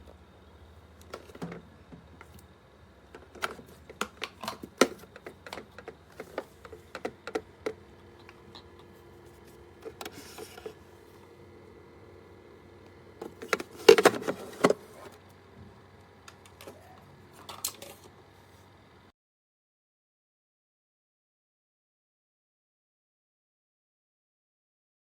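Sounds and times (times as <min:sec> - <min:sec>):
steady low hum: 0:00.0 - 0:19.1.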